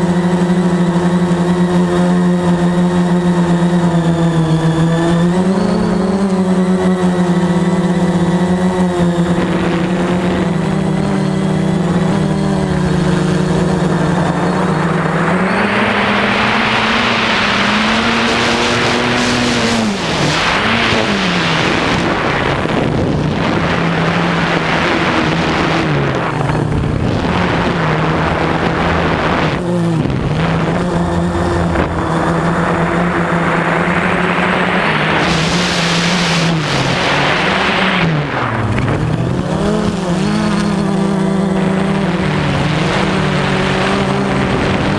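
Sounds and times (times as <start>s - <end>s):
drone motors whining: 0.0s - 44.9s
loud rushing noise: 9.2s - 40.3s.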